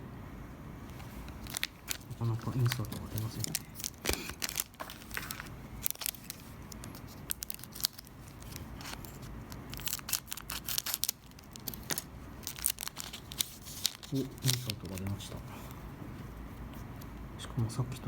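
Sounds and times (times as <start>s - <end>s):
trading cards being flipped: 0.9s - 15.2s.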